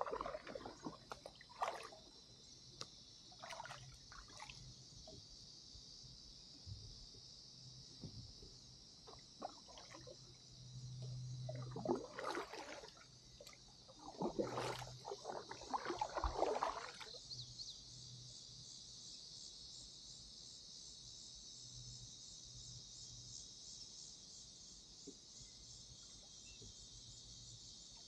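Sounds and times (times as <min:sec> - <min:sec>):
paddle splashing in water: 0:00.0 - 0:02.1, 0:03.4 - 0:04.6, 0:09.1 - 0:10.2, 0:11.5 - 0:17.2
insects buzzing: 0:00.0 - 0:28.0.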